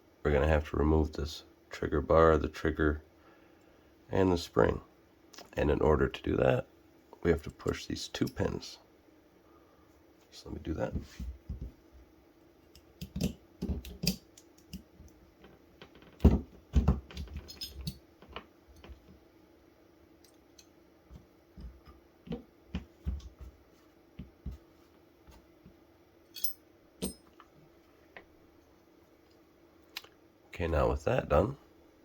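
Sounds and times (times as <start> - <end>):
faint steady hum: 0.0 - 32.0
clicks and taps of small tools: 12.7 - 15.2.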